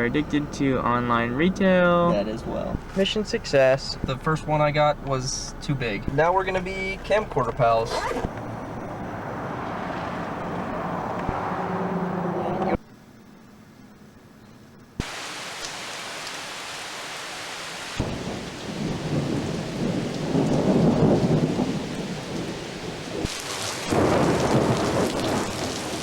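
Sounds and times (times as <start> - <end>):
heavy rain: 15.0 - 26.0
thunder rumbling: 17.8 - 26.0.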